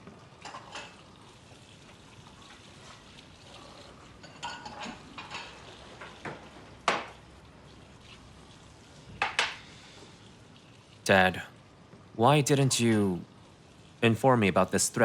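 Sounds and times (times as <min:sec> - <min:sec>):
tableware clinking and knocking: 0:04.2 - 0:05.6.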